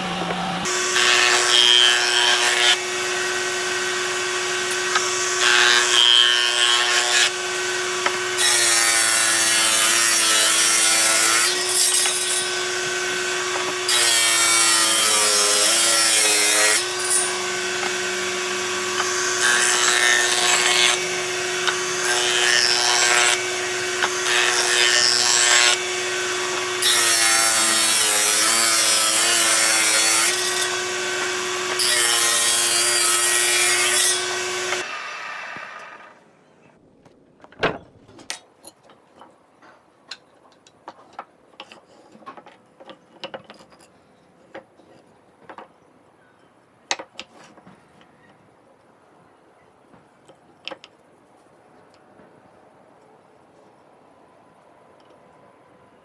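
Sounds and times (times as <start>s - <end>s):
power saw cutting wood: 0.0s - 36.2s.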